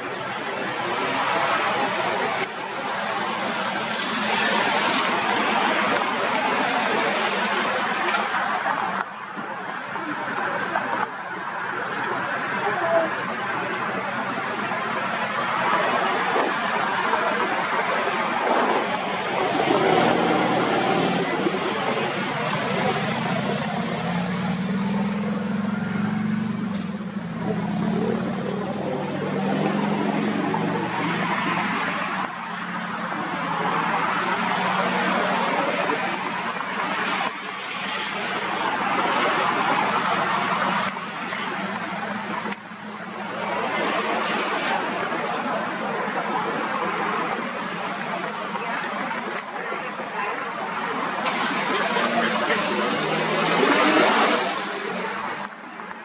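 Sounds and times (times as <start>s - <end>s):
passing vehicles: 0.0s - 56.0s.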